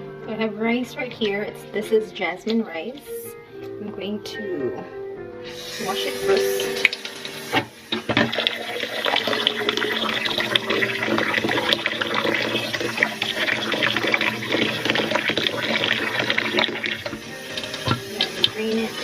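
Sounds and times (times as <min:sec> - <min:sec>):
tap running into pot: 0:06.6 - 0:19.0.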